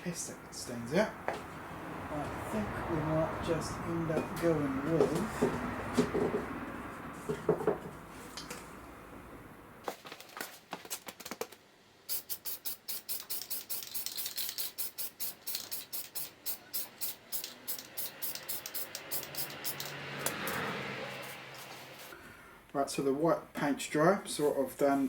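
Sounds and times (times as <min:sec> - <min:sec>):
spray can ball rattling: 0:11.0 - 0:22.1.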